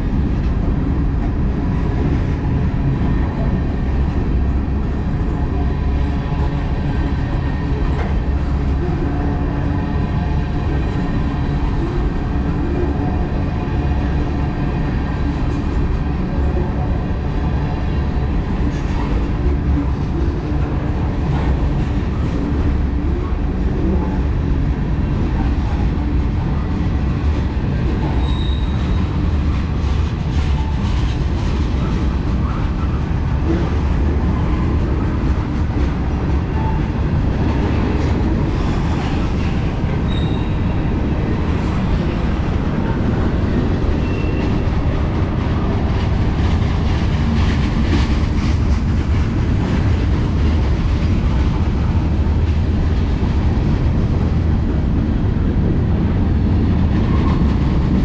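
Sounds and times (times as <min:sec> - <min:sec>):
train wheels rumbling on track: 0:00.0 - 0:58.0
wheel squeals: 0:28.1 - 0:29.0, 0:40.1 - 0:40.7, 0:44.0 - 0:44.6.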